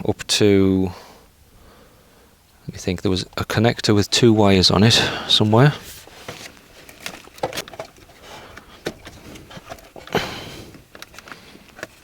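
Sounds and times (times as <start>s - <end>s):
hands clicking and tapping wiring: 6.4s - 12.0s.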